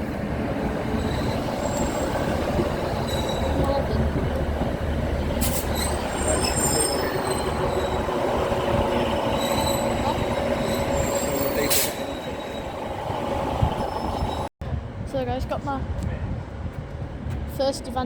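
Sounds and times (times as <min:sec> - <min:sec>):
train rumbling: 0:00.0 - 0:18.0
high wheel squeal: 0:01.0 - 0:03.8, 0:05.2 - 0:14.5.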